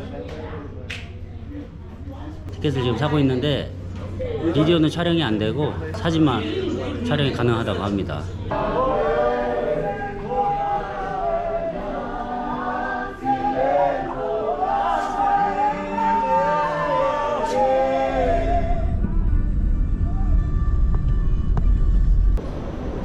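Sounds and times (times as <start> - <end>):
choir singing in harmony: 8.5 - 19.5
low rumble: 18.1 - 23.0.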